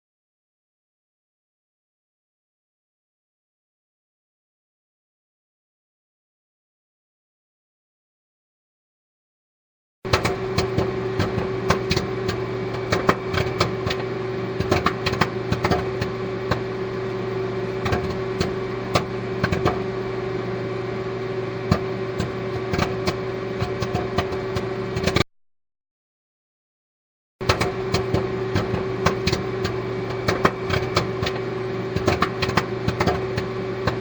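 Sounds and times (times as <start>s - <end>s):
machine hum with held tone: 10.1s - 25.3s, 27.4s - 34.0s.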